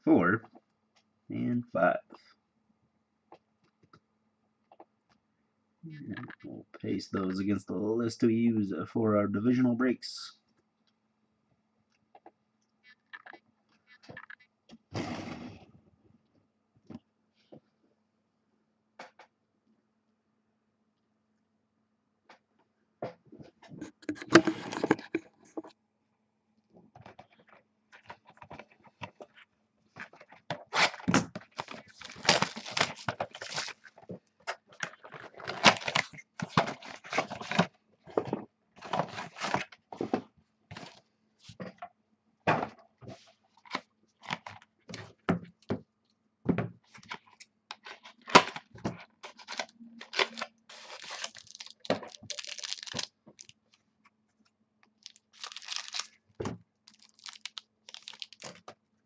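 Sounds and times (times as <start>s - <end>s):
wrappers tearing and crinkling: 30.7s - 33.9s, 34.9s - 36.2s, 49.3s - 53.6s, 55.0s - 56.2s, 56.9s - 58.6s.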